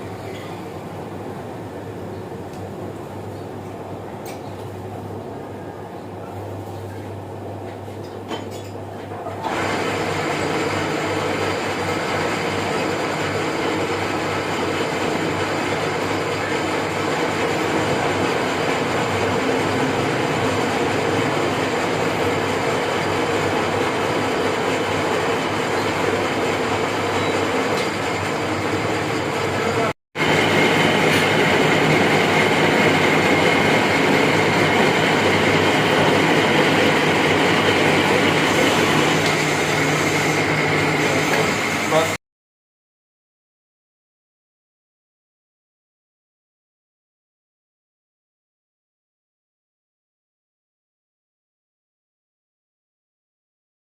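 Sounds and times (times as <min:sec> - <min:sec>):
metal lathe running: 0:09.4 - 0:42.2.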